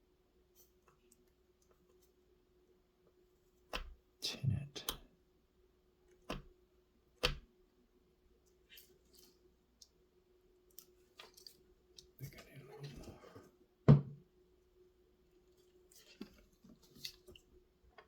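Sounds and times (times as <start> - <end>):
tools knocking on workbench: 13.9 - 14.2.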